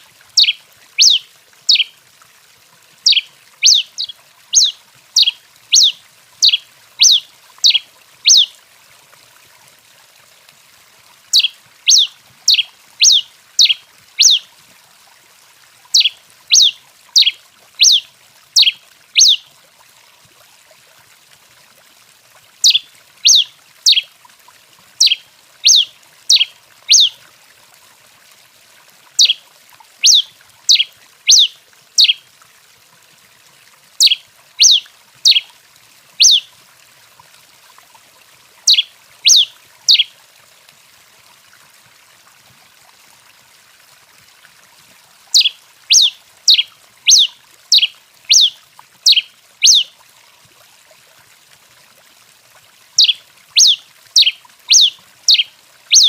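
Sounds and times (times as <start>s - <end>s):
finch calling: 0.4s - 1.9s, 3.0s - 8.5s, 11.3s - 14.4s, 15.9s - 18.0s, 18.6s - 19.4s, 22.6s - 24.0s, 25.0s - 27.2s, 29.2s - 29.4s, 30.0s - 32.2s, 34.0s - 35.4s, 36.2s - 36.5s, 38.7s - 40.1s, 45.3s - 49.9s, 53.0s - 56.0s.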